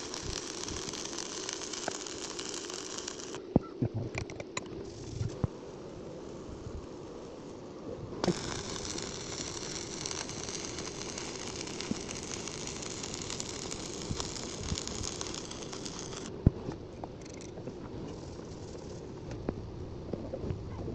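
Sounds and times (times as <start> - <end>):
welding arc hissing and crackling: 0.0 - 3.4, 8.2 - 16.3.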